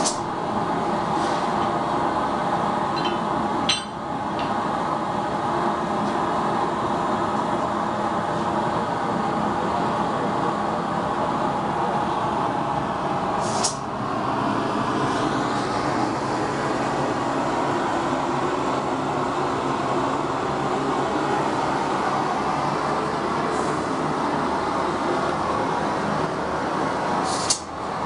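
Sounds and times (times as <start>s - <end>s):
sharp metallic clank: 3.0s - 4.0s.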